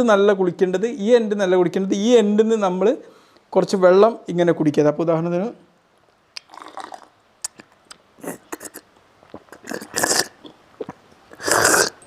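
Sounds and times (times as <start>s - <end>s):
man sipping and swallowing water: 6.4s - 12.0s.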